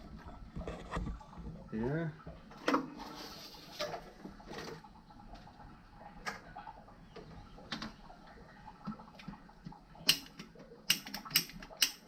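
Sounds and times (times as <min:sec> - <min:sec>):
plastic pipes clicking and knocking: 0:07.1 - 0:08.1, 0:08.8 - 0:12.0.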